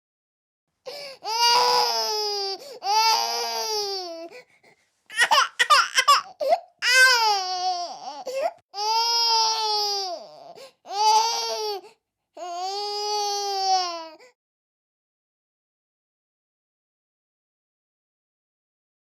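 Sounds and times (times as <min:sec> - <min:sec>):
baby crying: 0:00.9 - 0:04.4, 0:05.1 - 0:14.4.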